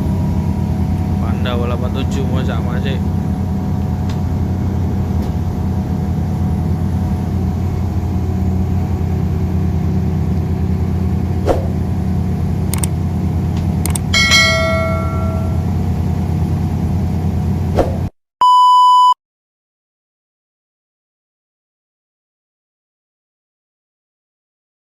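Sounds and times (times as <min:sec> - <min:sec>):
bus engine drone: 0:00.0 - 0:18.2
clicks: 0:12.7 - 0:12.9, 0:13.6 - 0:14.1
ringing chime: 0:14.2 - 0:15.7
electronic beep: 0:18.4 - 0:19.2.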